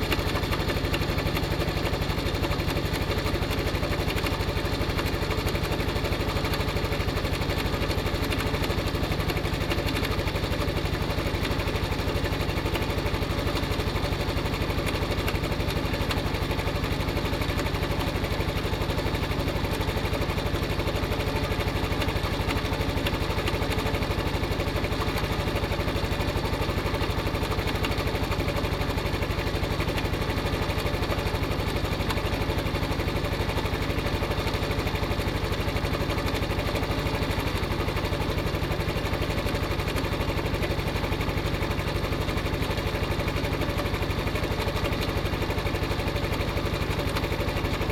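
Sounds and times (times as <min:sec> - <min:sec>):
motorcycle engine idling: 0:00.0 - 0:47.9.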